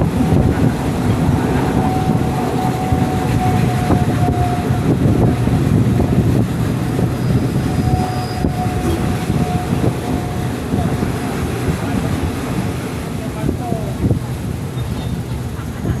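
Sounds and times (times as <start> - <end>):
thin whine: 0.0 - 12.6
train rumbling along track: 0.0 - 16.0.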